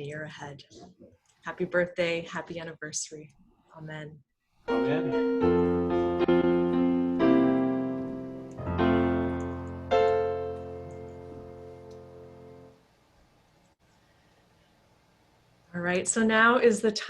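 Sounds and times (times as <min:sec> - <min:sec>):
piano chords: 0:04.7 - 0:12.8.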